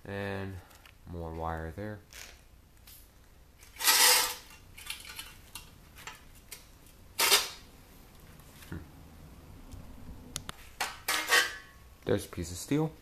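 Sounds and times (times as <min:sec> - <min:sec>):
loose metal parts clattering: 0:03.6 - 0:06.2.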